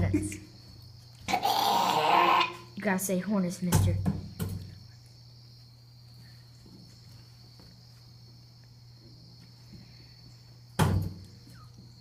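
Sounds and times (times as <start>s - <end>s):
loud burp: 1.3s - 2.7s.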